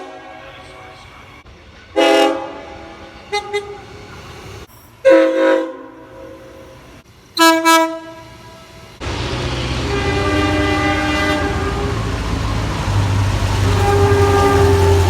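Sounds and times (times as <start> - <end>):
train horn blasts: 0.0 - 1.0, 2.0 - 3.8, 5.0 - 6.7, 7.4 - 8.6, 9.7 - 12.3, 13.5 - 15.0.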